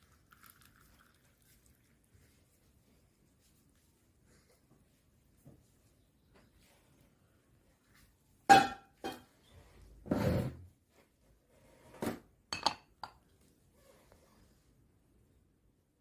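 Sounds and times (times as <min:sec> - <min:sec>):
glass clinking: 0:08.5 - 0:09.3, 0:12.5 - 0:13.2.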